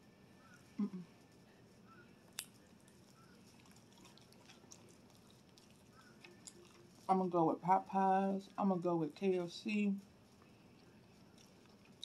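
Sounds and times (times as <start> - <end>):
wet mouth clicks from chewing: 2.3 - 7.0, 10.8 - 12.0.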